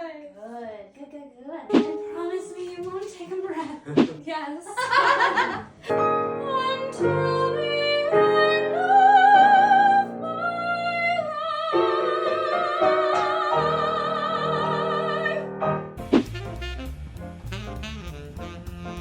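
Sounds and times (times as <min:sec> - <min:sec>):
piano chords: 0:01.7 - 0:02.9, 0:05.2 - 0:19.0.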